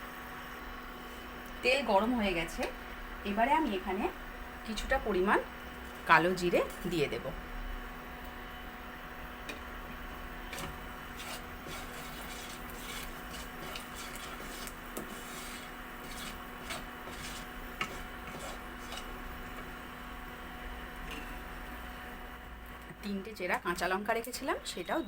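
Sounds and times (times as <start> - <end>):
seeds sizzling in hot oil: 2.8 - 22.9.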